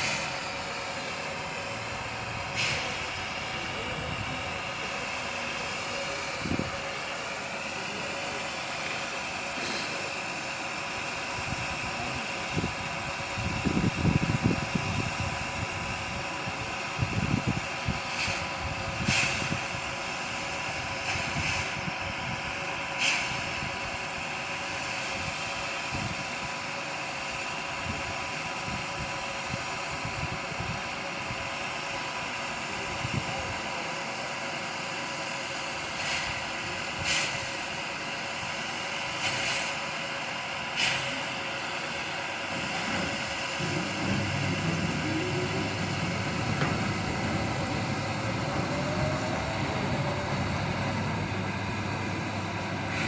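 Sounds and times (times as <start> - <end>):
low rumbling surges: 43.1 - 53.0.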